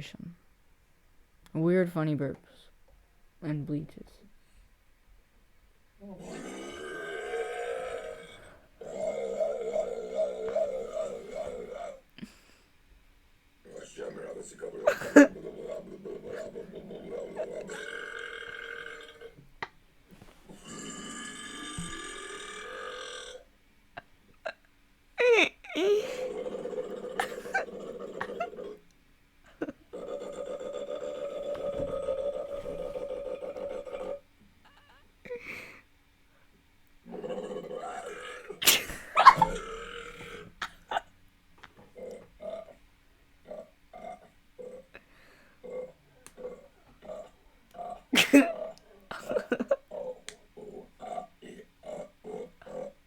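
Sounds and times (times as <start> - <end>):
person burping: 6.0 - 11.4, 14.8 - 15.5, 16.3 - 19.4, 20.5 - 23.5, 25.2 - 28.6, 37.8 - 41.1, 46.4 - 50.1.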